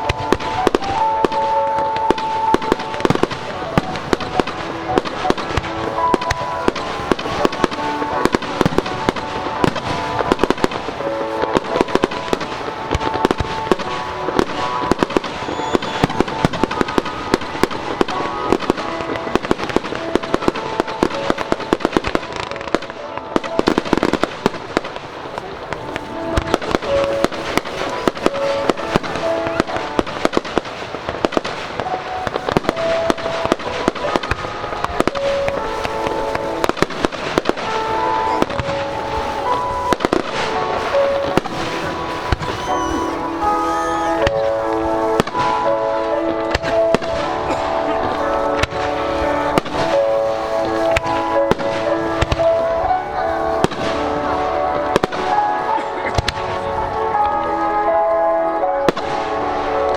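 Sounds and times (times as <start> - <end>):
fireworks bangs and crackling: 0.0 - 59.9
music playing: 0.0 - 59.9.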